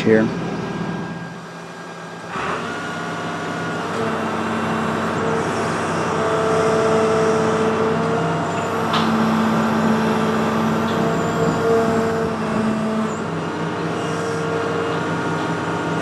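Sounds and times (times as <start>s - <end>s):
excavator diesel engine and hydraulics: 0.0s - 16.0s.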